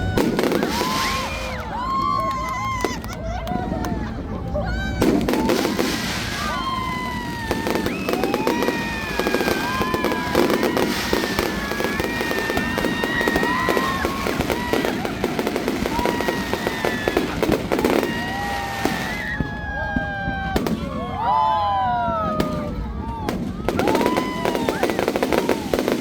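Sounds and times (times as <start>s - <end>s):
crowd chatter: 0.0s - 26.0s
fireworks bursting and crackling: 0.0s - 26.0s.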